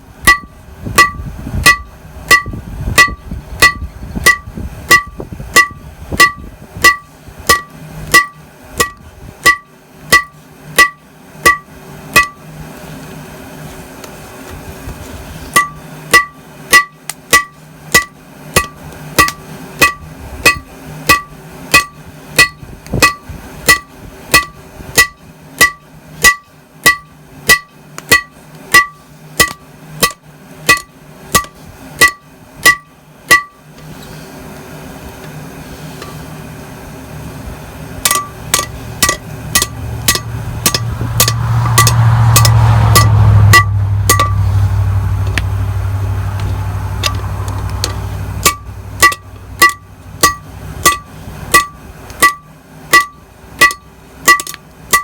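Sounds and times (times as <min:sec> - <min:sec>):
hammer striking metal anvil: 0:00.2 - 0:12.4, 0:15.6 - 0:33.6, 0:38.1 - 0:44.4, 0:47.0 - 0:55.0
loud low rumble: 0:36.5 - 0:52.1.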